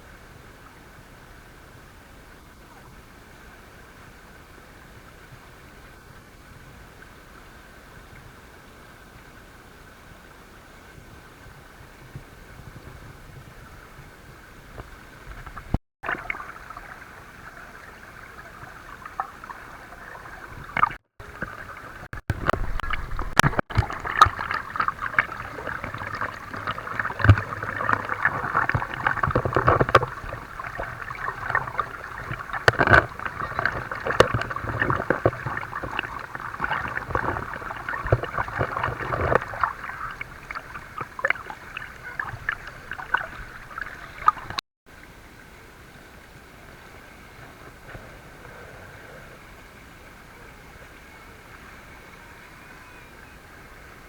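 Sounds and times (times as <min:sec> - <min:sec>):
river water rushing and splashing: 0:16.0 - 0:51.6.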